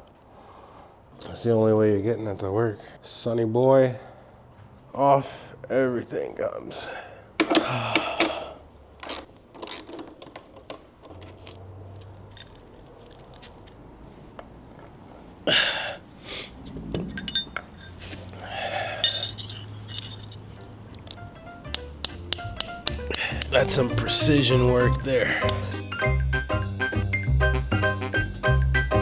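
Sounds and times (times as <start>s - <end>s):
metal tools clinking: 9.0s - 15.4s, 17.0s - 25.9s
ringing metal clunk: 17.0s - 18.0s, 19.0s - 26.2s.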